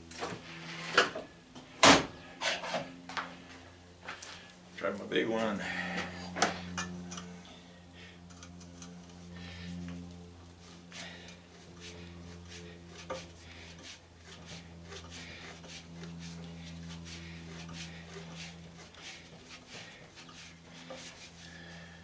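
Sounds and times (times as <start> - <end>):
low hum: 0.0 - 22.0
screwdriver clicking and scraping: 8.3 - 9.2.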